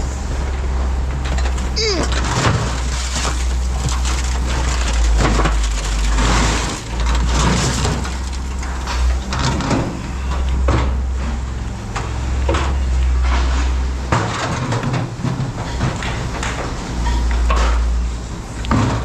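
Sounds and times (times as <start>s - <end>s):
scrap metal clattering: 1.2s - 11.4s.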